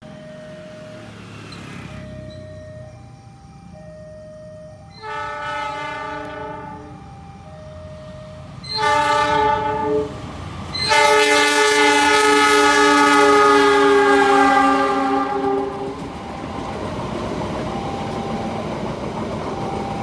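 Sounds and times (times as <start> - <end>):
locomotive air horn blasts: 5.0 - 7.0, 8.6 - 16.0.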